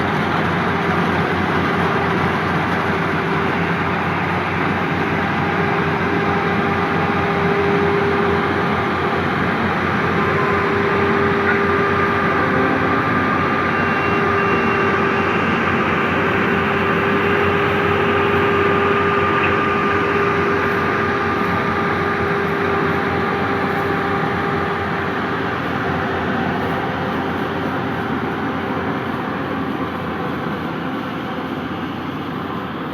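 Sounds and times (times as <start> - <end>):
combine harvester running: 0.0 - 32.9
machine whining tones: 10.0 - 25.0.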